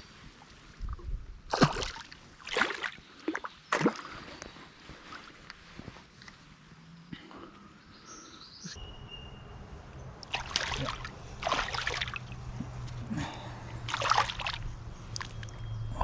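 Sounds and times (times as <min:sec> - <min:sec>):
water splashing: 0:01.5 - 0:04.2, 0:10.2 - 0:15.7
low steady hum: 0:08.8 - 0:16.0.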